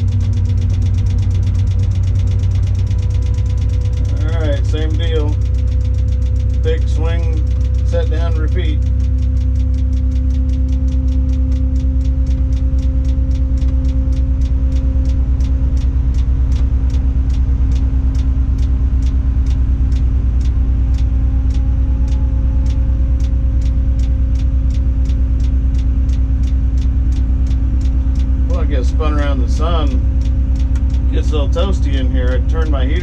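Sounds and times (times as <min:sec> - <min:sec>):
fast regular ticking: 0:00.0 - 0:33.0
crane engine and hydraulics running: 0:12.4 - 0:33.0.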